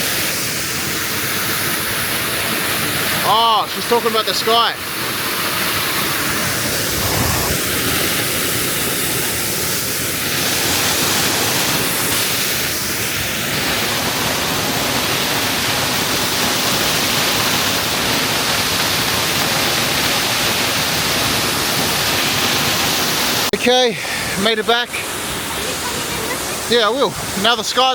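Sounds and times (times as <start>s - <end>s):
waterfall rushing: 0.0s - 27.9s
low rumble: 6.4s - 8.2s.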